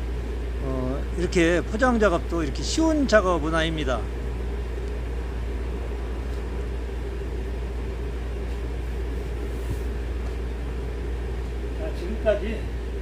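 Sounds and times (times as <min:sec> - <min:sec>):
low rumble and hum: 0:00.0 - 0:13.0.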